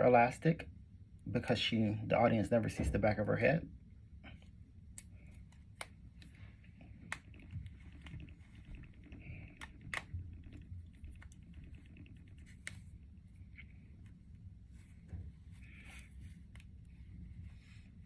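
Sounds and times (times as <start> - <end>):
hands rustling wig hair: 4.5 - 18.0.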